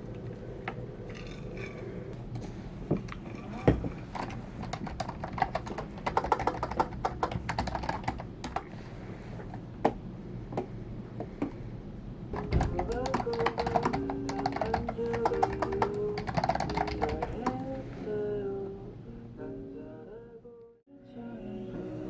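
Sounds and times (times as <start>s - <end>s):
computer keyboard typing: 4.1s - 8.7s, 12.4s - 17.6s.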